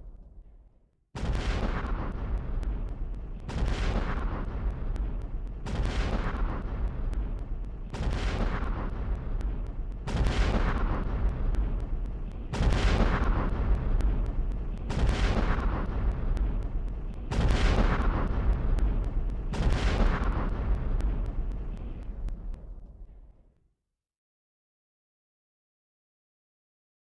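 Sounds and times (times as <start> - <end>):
slowed-down gunshot booms: 1.2 - 22.5.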